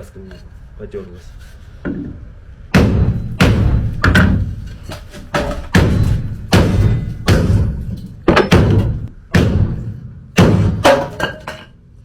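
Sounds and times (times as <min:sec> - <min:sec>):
dull wooden hammer thuds: 0:02.8 - 0:11.7.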